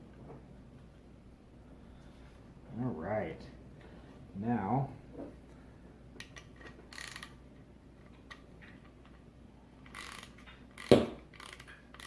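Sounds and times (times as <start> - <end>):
ratchet clicking: 6.3 - 7.4, 9.8 - 12.0
sharp knock: 10.9 - 11.2.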